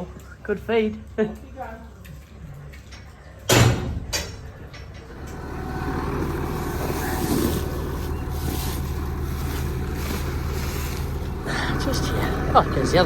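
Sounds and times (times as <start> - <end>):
vehicle engine running: 4.5 - 13.0.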